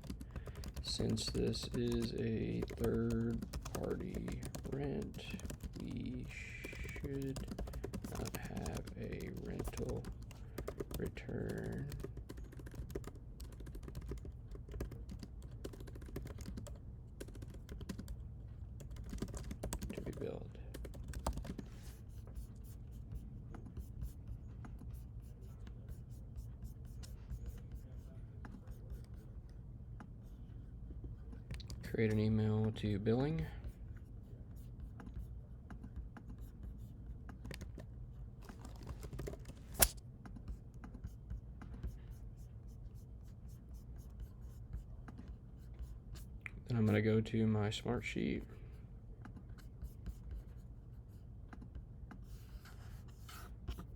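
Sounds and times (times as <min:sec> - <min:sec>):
typing on keyboard: 0:00.0 - 0:18.2, 0:18.8 - 0:22.5, 0:31.5 - 0:31.9, 0:35.0 - 0:42.0
low steady hum: 0:00.0 - 0:53.9
keyboard key clicks: 0:38.5 - 0:40.0.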